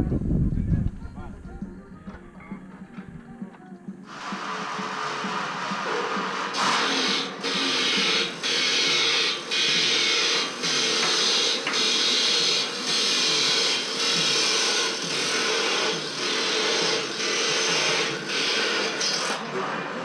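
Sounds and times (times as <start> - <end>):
power tool running in bursts: 4.0 - 20.0.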